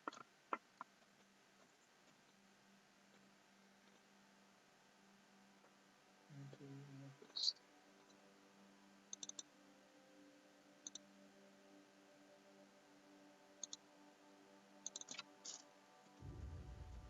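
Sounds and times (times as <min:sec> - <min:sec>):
faint room hum: 0:00.0 - 0:17.0
computer mouse clicks: 0:09.1 - 0:09.5, 0:10.8 - 0:11.1, 0:13.6 - 0:13.8, 0:14.8 - 0:15.6.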